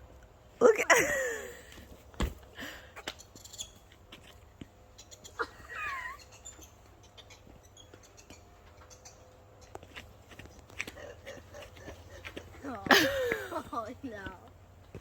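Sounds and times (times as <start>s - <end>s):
monkey high call: 5.0s - 7.4s.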